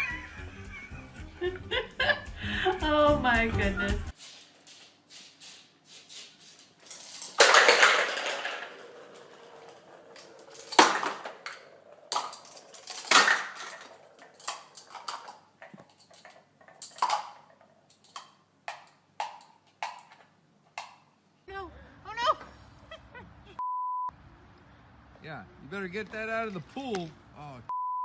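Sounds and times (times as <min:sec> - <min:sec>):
hard objects clattering: 0:06.8 - 0:21.1.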